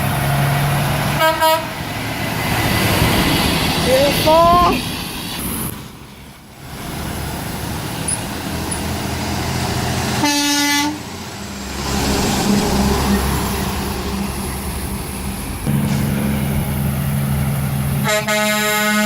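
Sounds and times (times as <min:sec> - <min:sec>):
heavy vehicle engine passing: 0:00.0 - 0:19.0
road traffic: 0:00.0 - 0:19.0
truck horn blast: 0:01.1 - 0:01.8, 0:10.2 - 0:11.1, 0:18.0 - 0:19.0.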